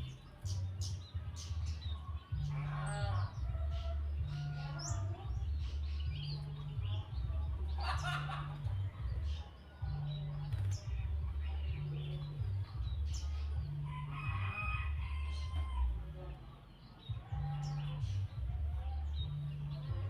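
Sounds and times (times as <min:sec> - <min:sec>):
background music with bass line: 0:00.0 - 0:20.0
birds chirping: 0:00.0 - 0:20.0
rooster crowing: 0:13.9 - 0:15.9.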